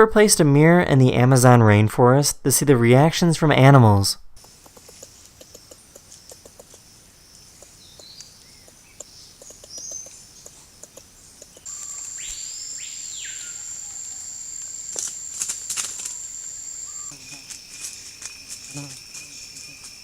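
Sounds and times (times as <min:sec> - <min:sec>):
faint ticks: 0:04.4 - 0:12.2
bird chirp: 0:04.4 - 0:20.0
high insect whine: 0:04.4 - 0:20.0.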